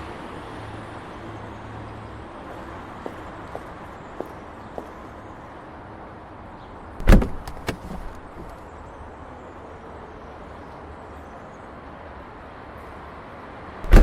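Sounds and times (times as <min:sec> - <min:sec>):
loud thump: 0:07.0 - 0:08.0.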